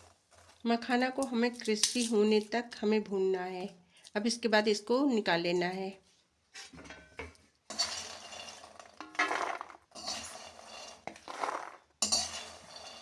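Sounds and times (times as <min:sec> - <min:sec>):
metal spatula scraping nuts in pan: 0:00.0 - 0:02.3, 0:07.7 - 0:13.0.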